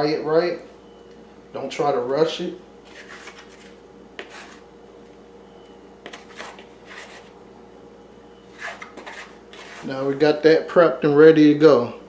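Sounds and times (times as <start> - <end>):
low steady hum: 0.0 - 12.0
chicken rubbed in flour: 2.8 - 4.7, 6.1 - 7.4, 8.5 - 10.1.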